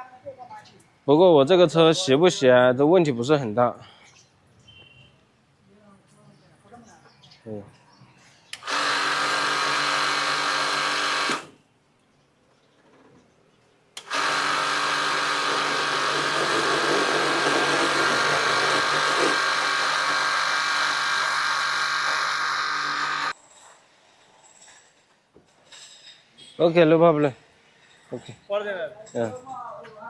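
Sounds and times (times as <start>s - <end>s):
pressure washer motor hum: 8.5s - 11.6s, 14.0s - 23.4s.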